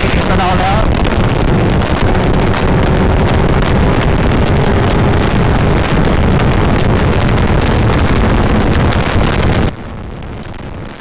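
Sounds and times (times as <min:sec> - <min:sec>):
motorcycle engine running: 0:00.0 - 0:09.7
wind rushing over microphone: 0:00.0 - 0:11.0.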